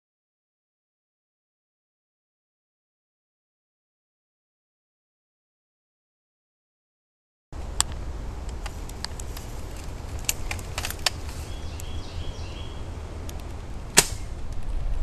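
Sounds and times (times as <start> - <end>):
wind rumble on microphone: 7.6 - 15.0
sharp clicks and snaps: 7.8 - 11.9, 13.2 - 14.7.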